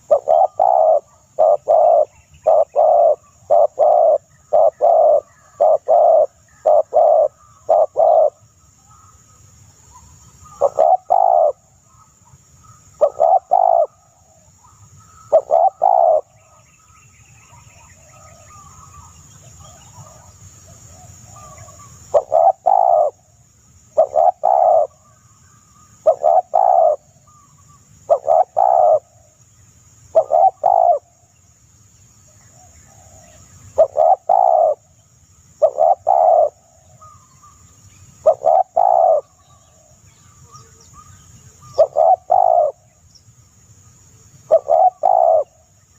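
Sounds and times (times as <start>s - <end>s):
dove cooing: 0.0s - 9.1s, 10.4s - 12.1s, 13.0s - 16.6s, 17.8s - 23.3s, 24.0s - 25.2s, 26.0s - 27.5s, 28.1s - 29.3s, 30.1s - 31.2s, 32.6s - 34.9s, 35.6s - 37.5s, 38.2s - 42.9s, 44.4s - 45.7s
high-pitched insect-like hiss: 0.0s - 45.9s.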